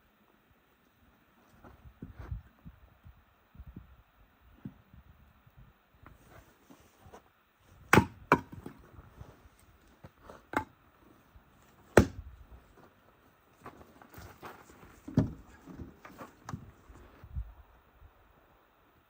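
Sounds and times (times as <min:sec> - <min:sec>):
axe chopping firewood: 0:07.8 - 0:08.8, 0:10.5 - 0:10.8, 0:11.8 - 0:12.3.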